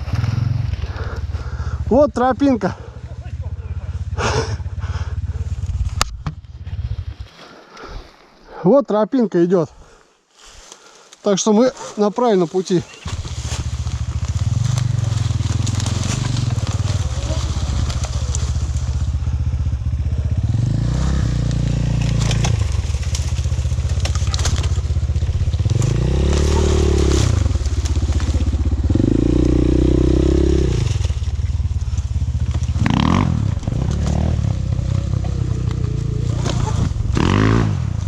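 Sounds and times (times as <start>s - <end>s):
vehicle engine revving: 0.0s - 2.0s, 13.0s - 38.0s.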